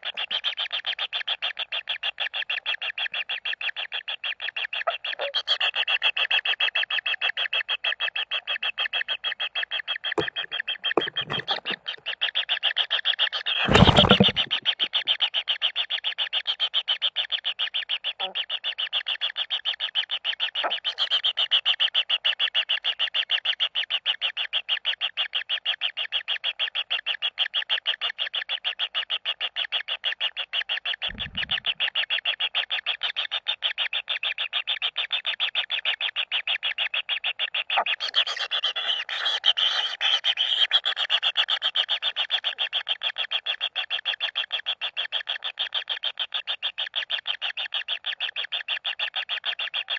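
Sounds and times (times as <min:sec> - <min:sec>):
bird chicks churring: 0:10.2 - 0:12.3, 0:13.4 - 0:15.0, 0:31.1 - 0:32.0
low thump: 0:31.1 - 0:31.8.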